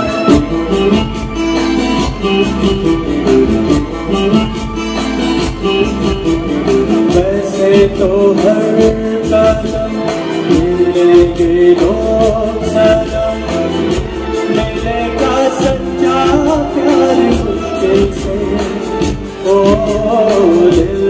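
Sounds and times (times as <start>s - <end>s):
instruments with steady beat: 0.0s - 21.0s
person singing long sliding notes: 7.0s - 21.0s.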